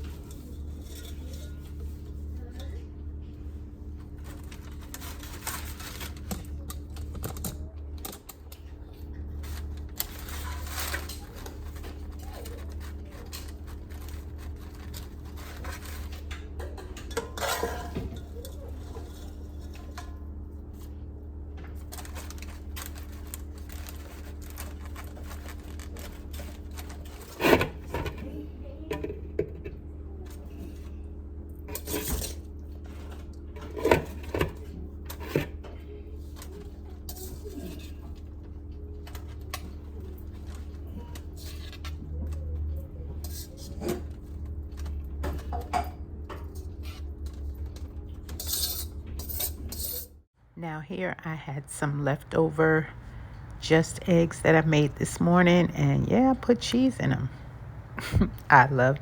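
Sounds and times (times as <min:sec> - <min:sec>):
utensils and dishes clinking: 0:00.0 - 0:02.9, 0:04.1 - 0:20.9, 0:31.7 - 0:38.4, 0:39.0 - 0:50.2
steady low hum: 0:00.0 - 0:59.0.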